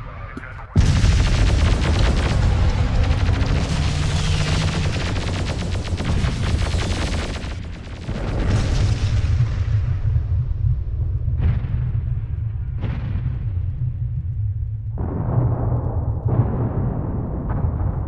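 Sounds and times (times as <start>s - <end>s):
deep explosive rumble: 0.0s - 18.0s
rapid gunfire: 0.8s - 9.2s.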